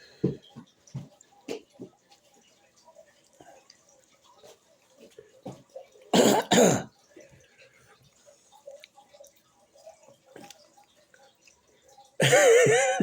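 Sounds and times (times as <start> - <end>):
harsh coughs: 6.1 - 6.9, 12.2 - 13.0.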